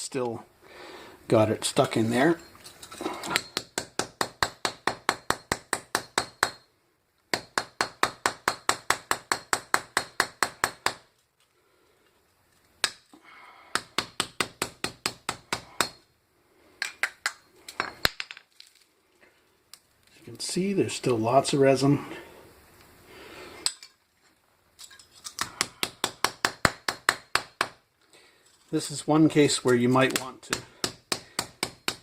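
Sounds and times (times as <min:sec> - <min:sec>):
hammer pounding hollow metal: 0:03.3 - 0:06.6.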